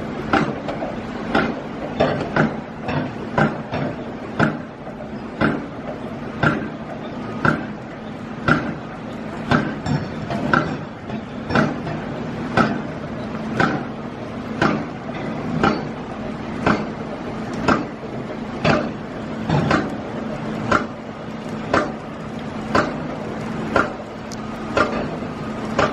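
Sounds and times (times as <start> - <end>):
steady low hum: 0.0 - 25.9.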